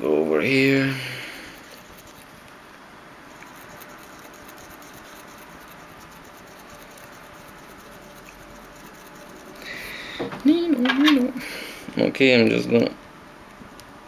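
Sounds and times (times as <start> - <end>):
cotton swab scratching contacts: 1.5 - 2.6, 3.3 - 9.9.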